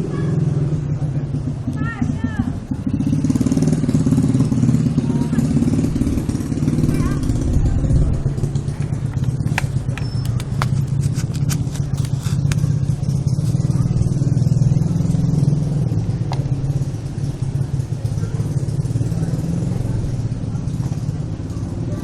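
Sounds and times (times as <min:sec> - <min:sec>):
low engine-like hum: 0:00.0 - 0:22.0.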